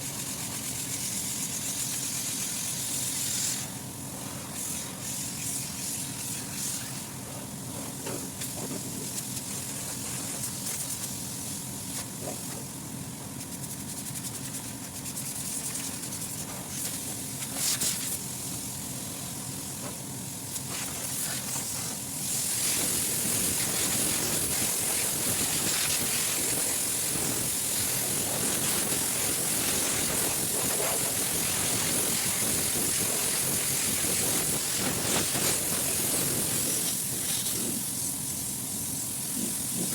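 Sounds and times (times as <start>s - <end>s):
compressed air hissing: 0.0s - 39.9s.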